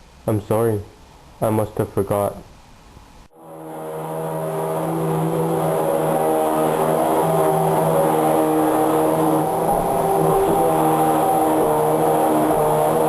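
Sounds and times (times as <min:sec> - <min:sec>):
vacuum cleaner droning: 0:03.4 - 0:13.0.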